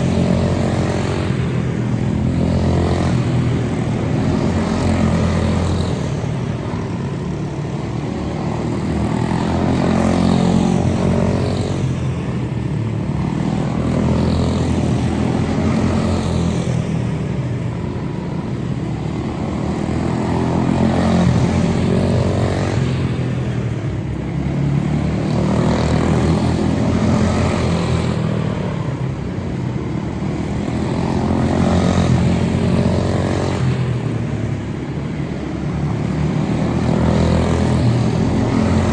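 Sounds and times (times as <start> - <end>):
small race car engines: 0.0 - 38.9.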